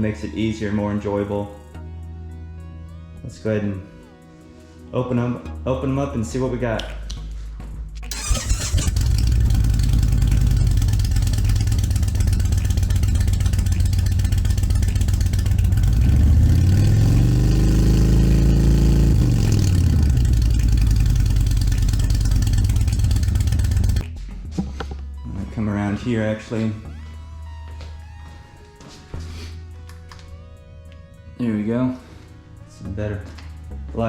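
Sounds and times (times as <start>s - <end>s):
motorcycle engine idling and revving: 8.1s - 24.3s.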